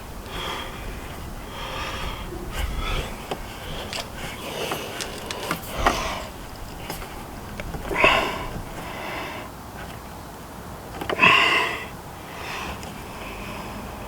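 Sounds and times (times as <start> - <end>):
man breathing and sniffing: 0.0 - 9.6.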